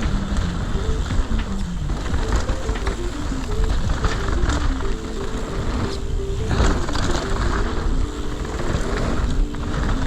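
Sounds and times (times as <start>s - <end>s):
background music: 0.0s - 10.0s
mountain bike rumble and rattle: 0.0s - 10.0s.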